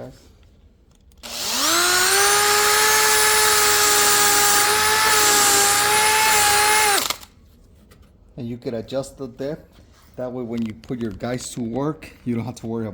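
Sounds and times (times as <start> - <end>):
power drill whining: 1.2 - 7.3.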